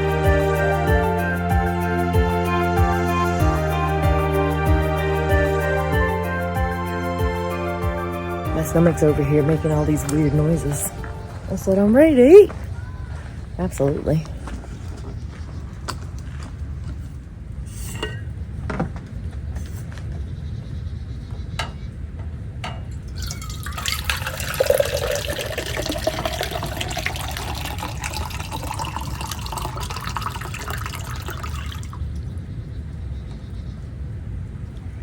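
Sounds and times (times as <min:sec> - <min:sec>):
steady low rumble: 0:00.0 - 0:19.4
liquid poured into container: 0:23.0 - 0:32.1.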